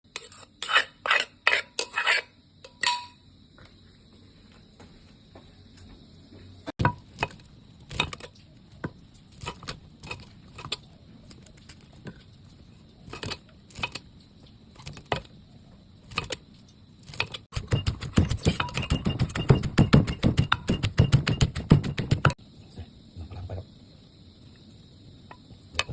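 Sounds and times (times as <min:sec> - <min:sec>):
utensils clinking against dishes: 0:00.2 - 0:03.2.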